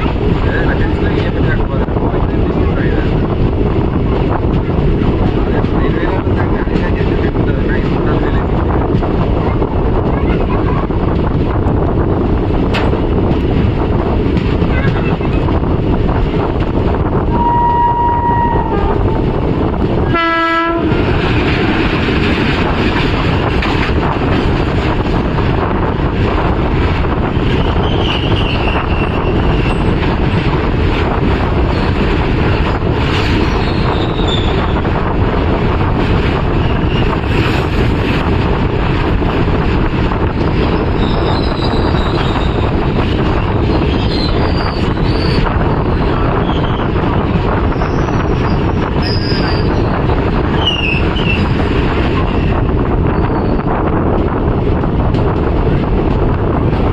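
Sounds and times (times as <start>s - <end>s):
train wheels rumbling on rails: 0.0s - 56.9s
train horn blast: 17.3s - 19.0s, 20.1s - 21.0s.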